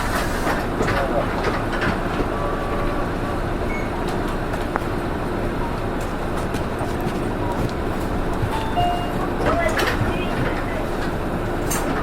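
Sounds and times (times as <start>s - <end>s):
bus diesel engine running: 0.0s - 12.0s
road rumble: 0.0s - 12.0s.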